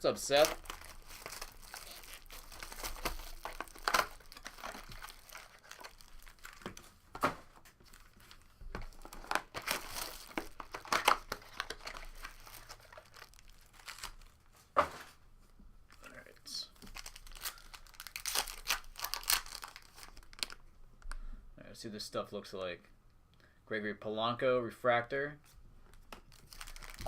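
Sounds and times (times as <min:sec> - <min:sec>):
foil wrappers crinkling and tearing: 0:00.0 - 0:07.0, 0:07.9 - 0:14.5, 0:16.8 - 0:20.6, 0:26.2 - 0:27.0.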